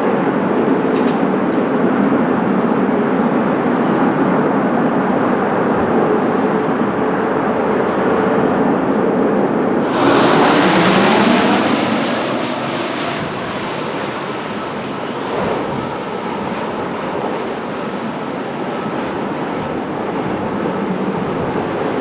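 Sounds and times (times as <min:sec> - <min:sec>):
jet airliner passing: 0:00.0 - 0:17.4
faint falling whine: 0:09.8 - 0:14.3.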